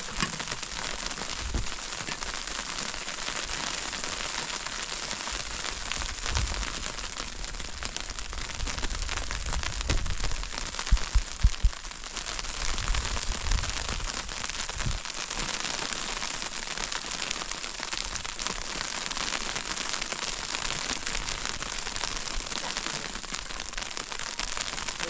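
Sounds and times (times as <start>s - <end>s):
crackling hiss: 0.0s - 25.0s
low thumps: 1.4s - 1.8s, 9.4s - 11.8s.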